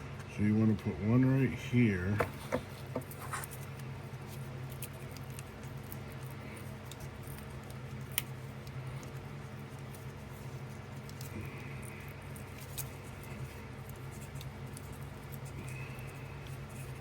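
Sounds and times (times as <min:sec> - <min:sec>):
steady low hum: 0:00.0 - 0:17.0
knife scraping wood: 0:02.2 - 0:03.6.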